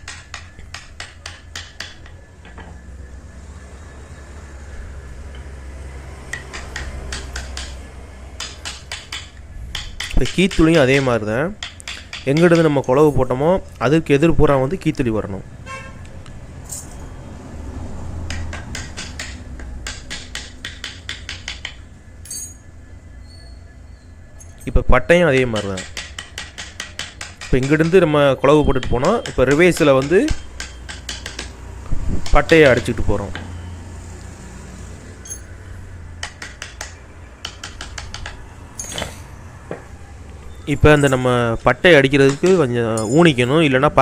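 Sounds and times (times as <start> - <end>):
mallet tapping a chisel into wood: 0.0 - 2.3, 6.3 - 12.8, 18.3 - 21.9, 25.3 - 28.1, 28.7 - 31.6, 36.2 - 38.5, 42.1 - 42.7.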